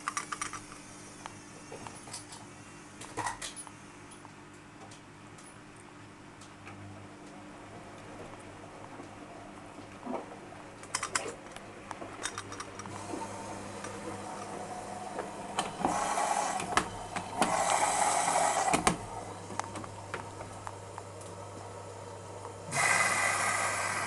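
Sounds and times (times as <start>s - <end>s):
washing machine hum: 0.0s - 24.0s
mechanical clicks: 10.8s - 13.1s.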